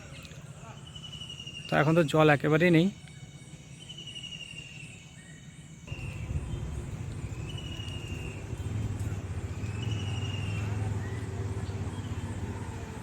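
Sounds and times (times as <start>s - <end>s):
insects chirping: 0.0s - 13.0s
vehicle engine rumble: 5.9s - 13.0s.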